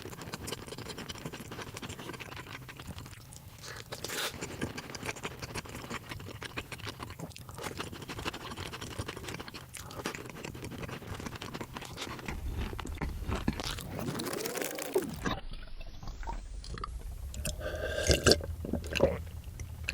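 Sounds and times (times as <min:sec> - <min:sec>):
crunching and chewing food: 0:00.0 - 0:19.9.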